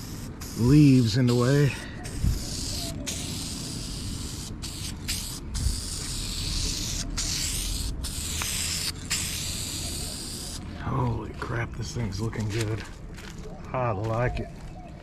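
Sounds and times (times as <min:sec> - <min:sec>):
aerosol can spraying: 0:00.0 - 0:10.6.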